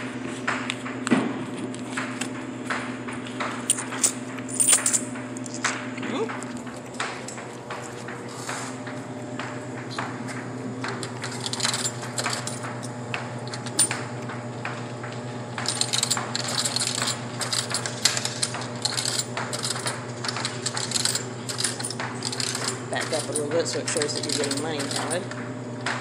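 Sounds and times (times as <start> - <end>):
steady low hum: 0.0 - 26.0
coins clinking through vending machine: 3.6 - 6.2, 10.8 - 14.1, 15.6 - 25.4.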